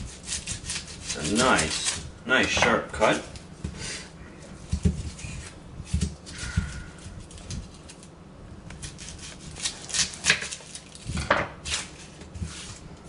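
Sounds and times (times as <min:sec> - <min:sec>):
knife slicing through onion: 0:00.0 - 0:02.6, 0:08.7 - 0:10.8, 0:11.6 - 0:12.8.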